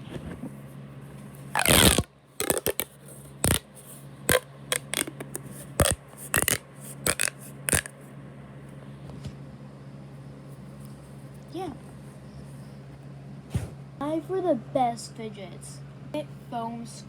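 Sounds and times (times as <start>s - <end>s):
plastic tube rasping crackle: 1.5s - 3.7s, 4.3s - 7.9s
plastic tube popping: 1.6s - 3.6s, 4.3s - 7.9s.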